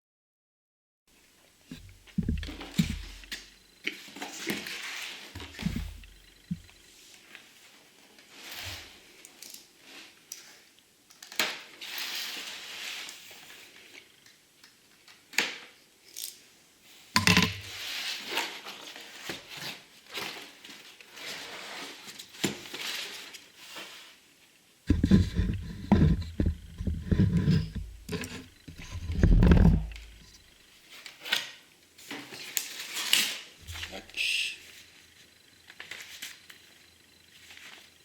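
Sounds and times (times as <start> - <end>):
plastic and cardboard crinkling: 1.7 - 6.7.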